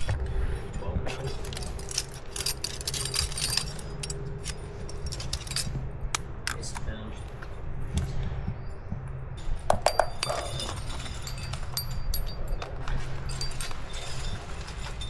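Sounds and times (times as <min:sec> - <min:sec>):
climbing gear clinking on harness: 0:01.1 - 0:07.4, 0:09.7 - 0:15.0.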